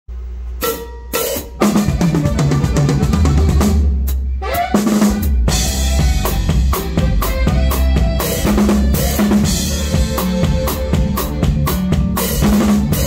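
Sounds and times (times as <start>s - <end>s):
bass line: 0.1s - 13.0s
drum kit: 0.1s - 13.0s
live band playing: 0.6s - 13.0s.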